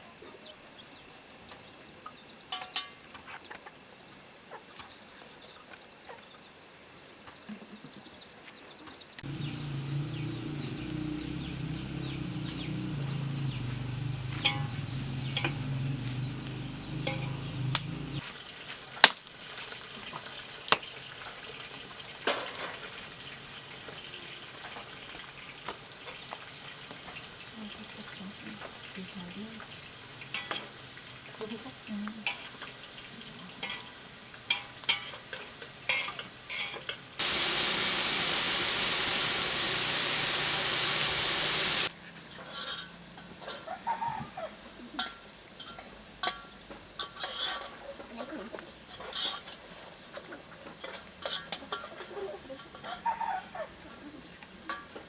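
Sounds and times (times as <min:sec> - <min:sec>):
loud steady sizzle: 0:09.2 - 0:41.9
chips frying in oil: 0:09.2 - 0:43.7
utensil scraping a pan: 0:14.4 - 0:14.7, 0:35.9 - 0:37.0, 0:42.3 - 0:43.7, 0:47.0 - 0:47.8, 0:48.9 - 0:49.9, 0:50.6 - 0:53.2.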